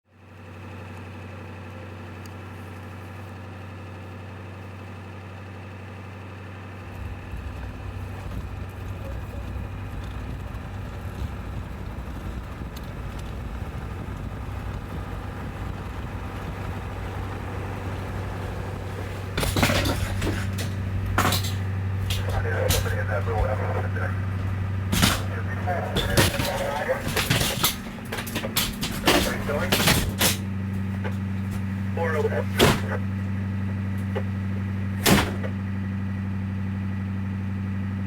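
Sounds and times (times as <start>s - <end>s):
engine running with low hum: 0.1s - 38.0s
loud clatter: 18.8s - 31.7s.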